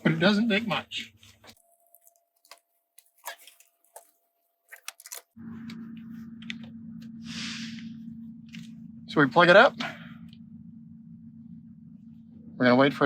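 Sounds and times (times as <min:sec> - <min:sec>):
plastic connector clicks and rustles: 0:01.9 - 0:05.3
steady low hum: 0:05.2 - 0:13.0.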